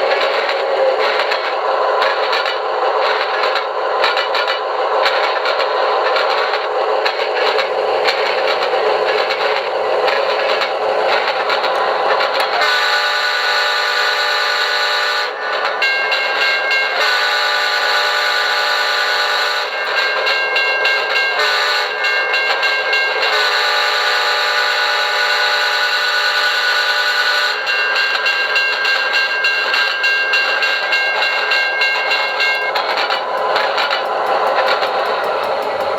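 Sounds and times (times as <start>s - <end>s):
locomotive air horn blasts: 12.6s - 15.4s, 17.0s - 19.8s, 21.4s - 22.0s, 23.3s - 27.7s
diesel engine rumble: 32.6s - 35.9s.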